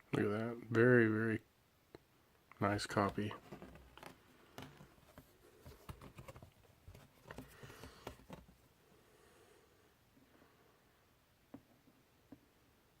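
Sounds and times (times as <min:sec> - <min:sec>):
faint room hiss: 0:00.0 - 0:13.0.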